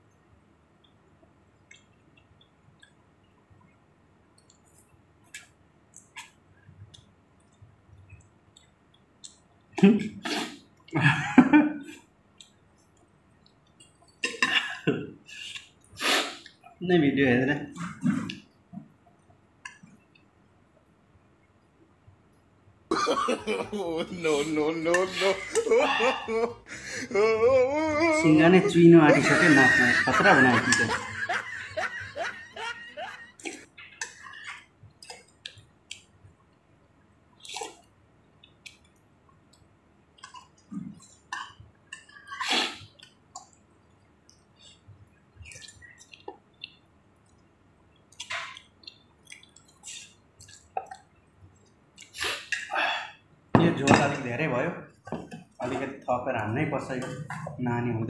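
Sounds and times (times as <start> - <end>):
wet eating smacks and clicks: 4.3 - 9.8, 33.4 - 36.3, 37.4 - 42.0, 42.8 - 52.7
loud slurps of noodle soup: 10.2 - 10.6, 16.0 - 16.5, 42.3 - 42.8
man giggling: 10.9 - 12.0, 22.9 - 33.6.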